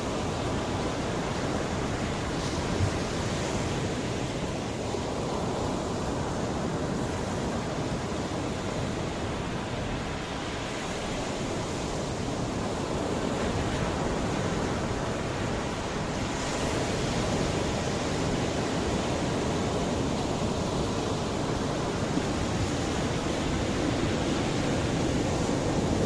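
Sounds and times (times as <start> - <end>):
sea waves washing in: 0.0 - 26.0.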